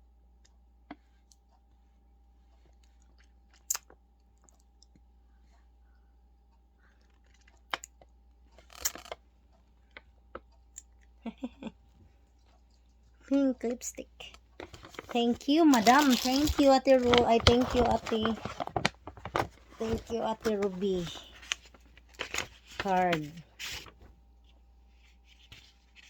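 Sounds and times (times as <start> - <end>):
faint steady hum: 0.0 - 26.0
small clicks of packaging: 14.3 - 24.1
packaging rustle: 14.6 - 24.1.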